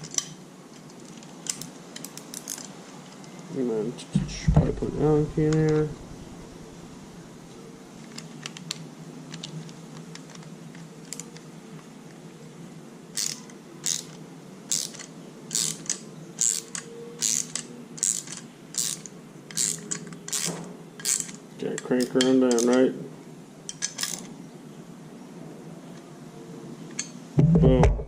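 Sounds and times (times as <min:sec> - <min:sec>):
ratchet wrench clicking: 0:13.2 - 0:21.4.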